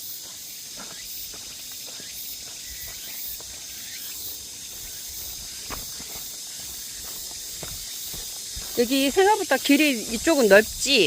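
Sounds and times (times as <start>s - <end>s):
footsteps on dirt trail: 0.0s - 11.0s
insects buzzing: 0.0s - 11.0s.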